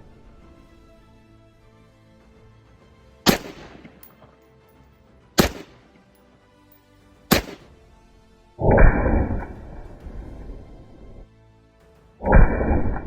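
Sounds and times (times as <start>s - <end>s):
rifle shots with echo: 3.3s - 4.4s, 5.4s - 5.9s, 7.3s - 7.8s, 12.2s - 13.0s.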